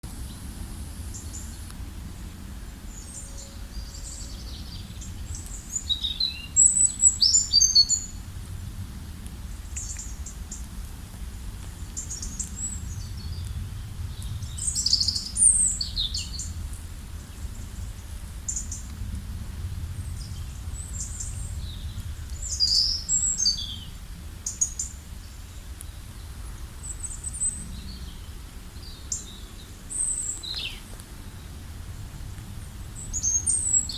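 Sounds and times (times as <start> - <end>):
low background rumble: 0.1 - 33.9
small birds chirping: 1.1 - 8.2, 9.5 - 10.7, 11.8 - 19.0, 20.0 - 31.6, 32.6 - 33.9.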